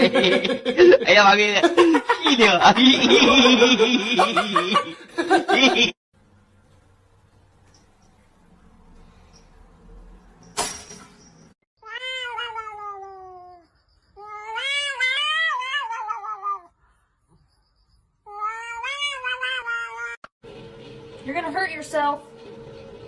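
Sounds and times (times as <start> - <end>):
cat meowing: 11.8 - 13.6, 14.2 - 16.8, 18.3 - 20.2.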